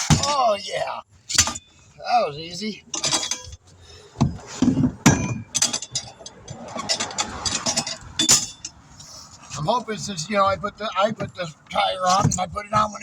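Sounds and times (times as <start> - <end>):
metal clanks and knocks: 0.0 - 0.4, 1.3 - 1.7, 2.9 - 8.8, 9.6 - 13.0
rough mechanical noise: 0.0 - 13.0.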